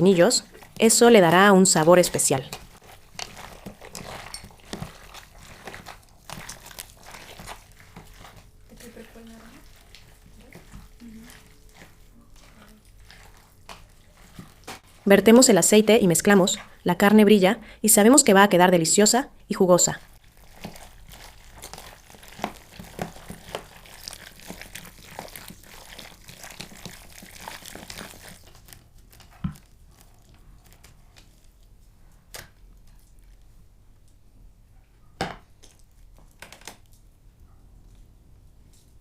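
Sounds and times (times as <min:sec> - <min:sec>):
hands squelching raw meat: 0:00.0 - 0:16.9, 0:19.9 - 0:33.3.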